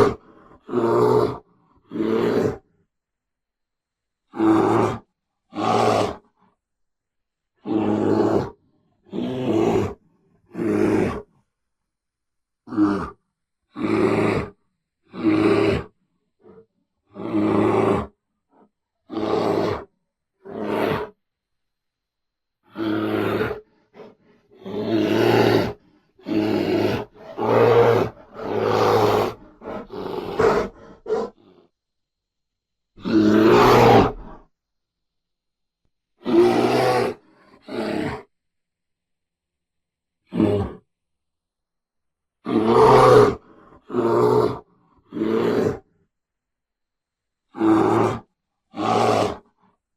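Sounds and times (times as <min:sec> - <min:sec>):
bear roaring and growling: 0:00.0 - 0:02.6, 0:04.3 - 0:06.2, 0:07.6 - 0:11.3, 0:12.7 - 0:18.2, 0:19.1 - 0:21.2, 0:22.7 - 0:31.7, 0:33.0 - 0:34.5, 0:36.2 - 0:38.3, 0:40.3 - 0:40.8, 0:42.4 - 0:45.9, 0:47.5 - 0:49.6.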